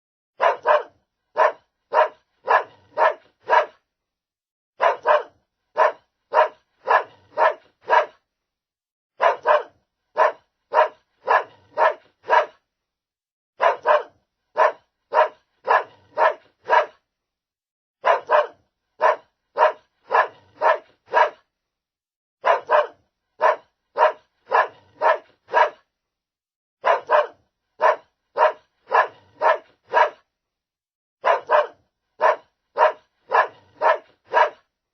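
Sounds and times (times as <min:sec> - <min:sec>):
small dog barking: 0:00.4 - 0:03.8, 0:04.8 - 0:08.2, 0:09.2 - 0:12.6, 0:13.6 - 0:17.0, 0:18.0 - 0:21.4, 0:22.4 - 0:25.8, 0:26.8 - 0:30.2, 0:31.2 - 0:34.7.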